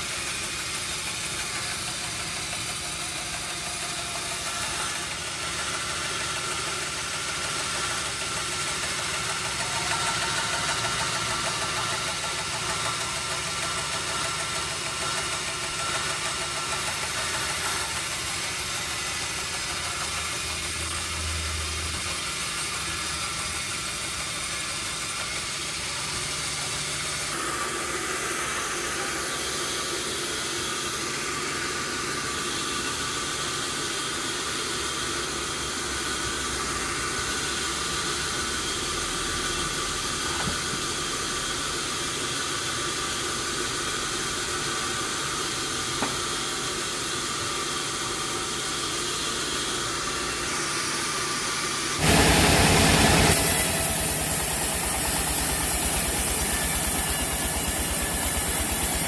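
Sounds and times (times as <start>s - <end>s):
sawmill machinery running: 0.0s - 59.0s
deeper machine hum: 52.0s - 59.0s.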